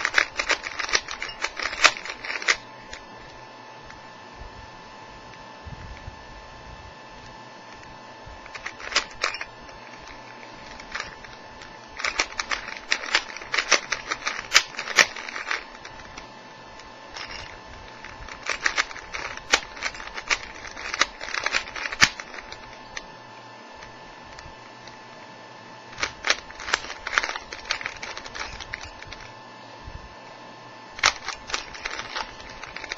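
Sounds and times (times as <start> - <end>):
puzzle cube clicking: 0.0 - 3.0, 8.5 - 11.3, 12.0 - 16.2, 17.2 - 23.1, 26.0 - 29.3, 31.0 - 32.9.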